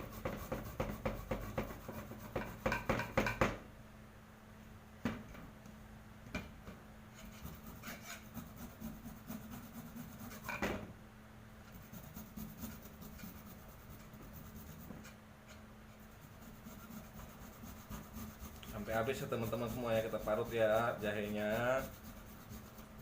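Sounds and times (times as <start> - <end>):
grater knocking: 0.1 - 3.6
ginger grating rasps: 16.2 - 23.0.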